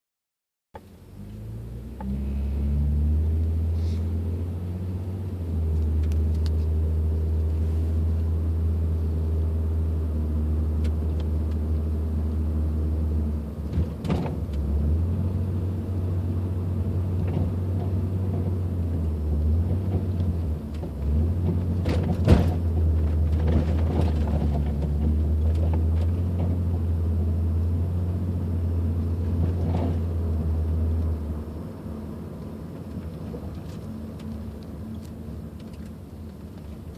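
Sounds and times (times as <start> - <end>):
car driving with low rumble: 0.8 - 36.9.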